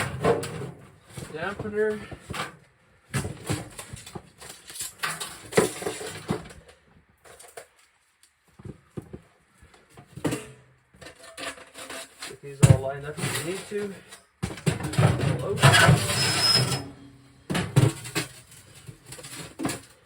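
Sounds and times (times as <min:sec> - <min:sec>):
sheet metal parts clanking: 0:14.6 - 0:19.6.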